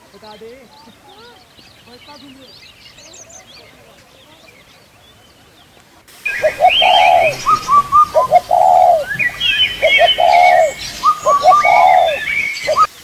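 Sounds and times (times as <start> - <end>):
birds chirping high: 0.1 - 13.0
bird repeating call: 6.2 - 13.0.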